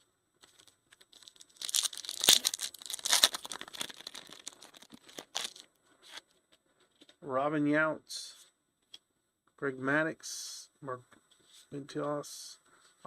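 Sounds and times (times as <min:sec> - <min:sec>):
wrapper tearing and crinkling: 0:00.4 - 0:05.6.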